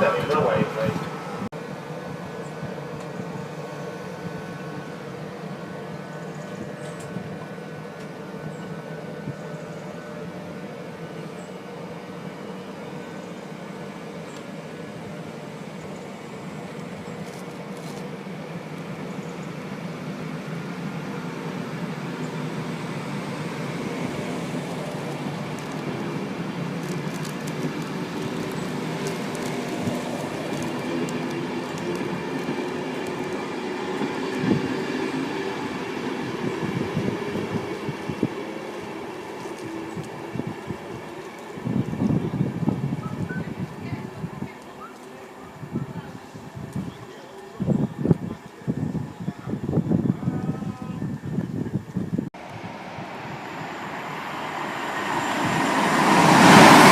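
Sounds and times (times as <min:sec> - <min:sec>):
train running noise: 0:00.0 - 0:56.9
wheels clicking on track: 0:15.7 - 0:56.9.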